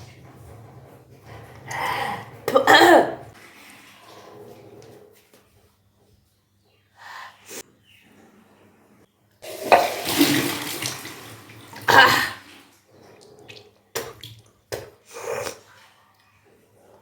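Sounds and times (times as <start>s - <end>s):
water gushing and splashing: 9.4s - 14.4s.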